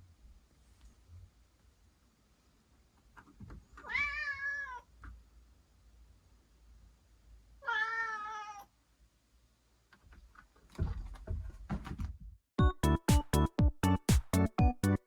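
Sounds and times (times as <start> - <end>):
cat meowing: 3.8 - 4.9, 7.6 - 8.7.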